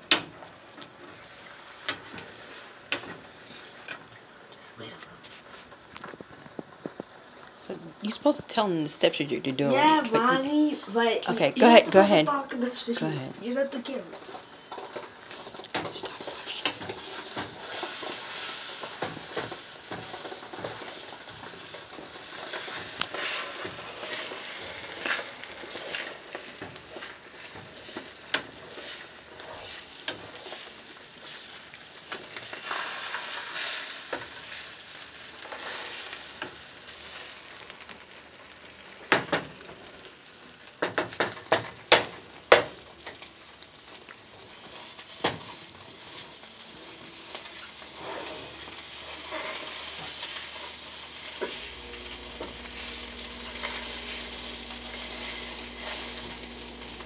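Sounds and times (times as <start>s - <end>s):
eggs sizzling in a frying pan: 0.0s - 57.0s
utensil scraping a pan: 14.1s - 31.6s, 35.4s - 36.3s, 44.5s - 57.0s.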